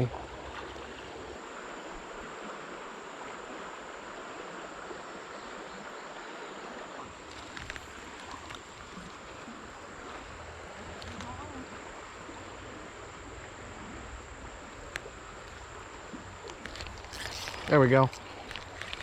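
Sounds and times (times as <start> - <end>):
creek water running: 0.0 - 19.0
faint ticks: 7.3 - 9.8, 10.7 - 11.6, 14.5 - 19.0.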